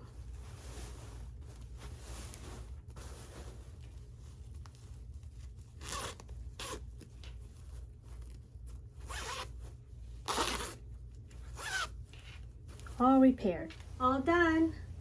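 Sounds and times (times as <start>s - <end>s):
zipper zipping up and down: 5.7s - 6.8s, 9.0s - 9.6s, 10.2s - 10.9s, 11.5s - 12.0s.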